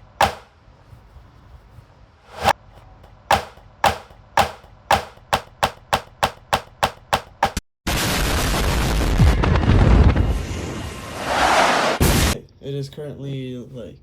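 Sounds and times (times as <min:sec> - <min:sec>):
sharp knocks: 0:00.0 - 0:00.5, 0:02.4 - 0:07.6.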